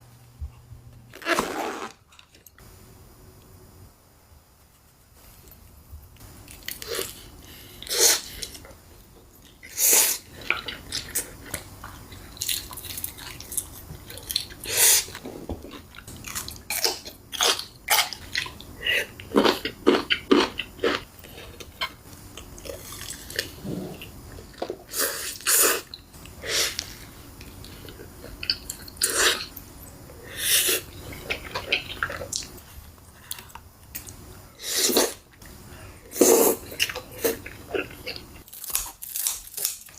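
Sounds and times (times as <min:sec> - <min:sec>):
person chewing food: 0:09.4 - 0:29.6, 0:30.6 - 0:32.6.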